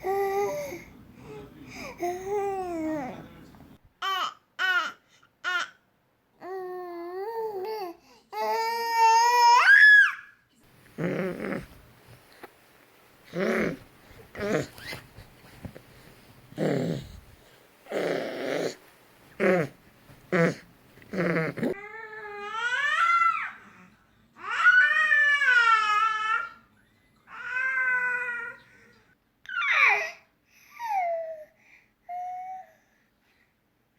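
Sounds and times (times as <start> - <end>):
infant cooing and grunting: 1.8 - 3.2, 6.4 - 9.7, 10.9 - 11.8, 13.3 - 15.0, 16.5 - 18.8, 19.4 - 23.8
infant squealing: 29.5 - 30.1.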